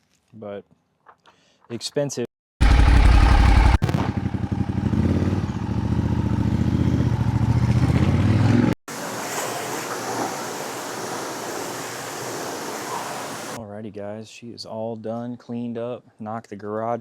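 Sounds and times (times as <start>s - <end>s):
motorcycle engine running: 2.6s - 8.7s.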